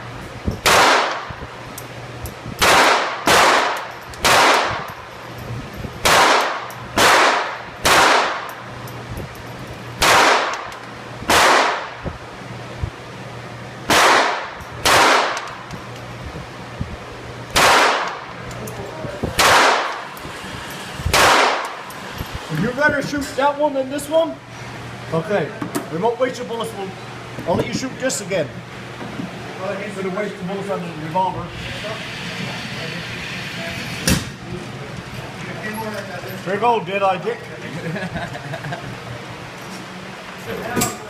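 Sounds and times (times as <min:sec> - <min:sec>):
gunshots: 0:00.6 - 0:01.3, 0:02.6 - 0:04.9, 0:06.0 - 0:08.5, 0:10.0 - 0:10.7, 0:11.3 - 0:12.0, 0:13.9 - 0:15.5, 0:17.6 - 0:18.2, 0:19.4 - 0:20.0, 0:21.1 - 0:21.7.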